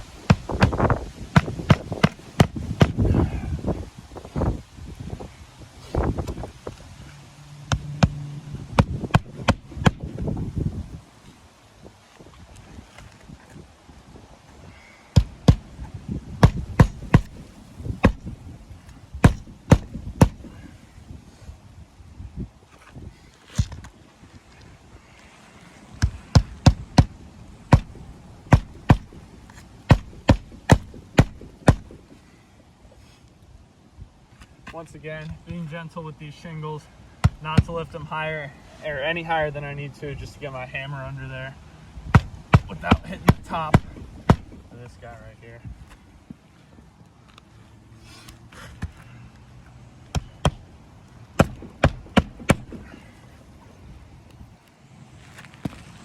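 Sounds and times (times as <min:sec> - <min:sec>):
hammer striking nails: 0:00.2 - 0:03.0, 0:08.8 - 0:10.1, 0:16.4 - 0:18.3, 0:19.2 - 0:20.6, 0:26.0 - 0:29.3, 0:29.9 - 0:32.2, 0:42.2 - 0:44.7, 0:51.4 - 0:53.0.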